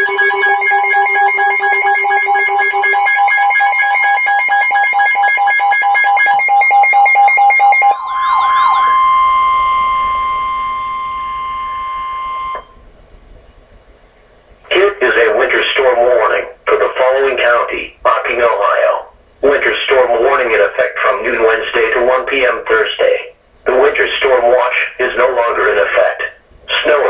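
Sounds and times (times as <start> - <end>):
warbling sweep tone: 0.0 - 3.4, 7.8 - 12.6
steady alert tone: 0.0 - 5.0, 7.4 - 12.7
electronic alarm beeps: 0.0 - 12.8.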